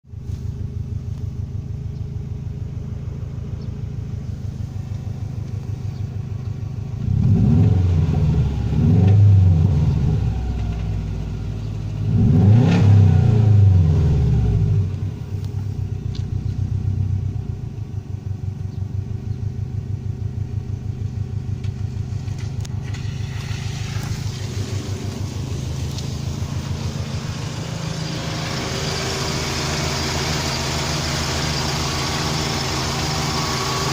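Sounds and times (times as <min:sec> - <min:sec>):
car engine idling and revving: 0:00.0 - 0:33.9
hiss: 0:22.8 - 0:33.9.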